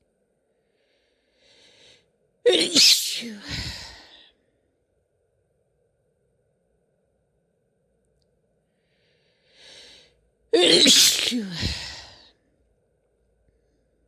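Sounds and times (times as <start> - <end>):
woman sneezing: 2.5 - 4.1, 10.6 - 12.2.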